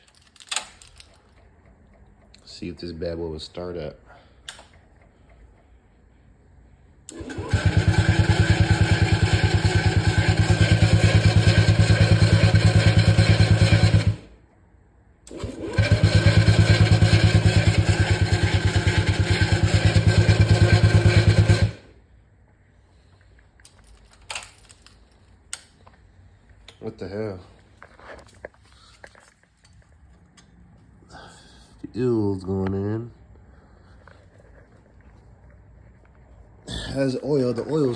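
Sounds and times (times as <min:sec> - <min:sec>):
scooter electric starter cranking: 0:07.1 - 0:14.3, 0:15.3 - 0:21.9.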